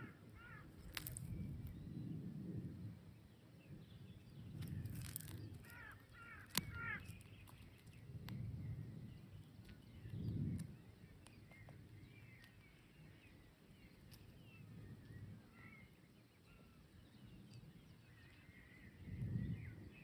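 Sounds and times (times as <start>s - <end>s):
birds harsh calls: 0.0s - 1.6s, 4.4s - 8.8s.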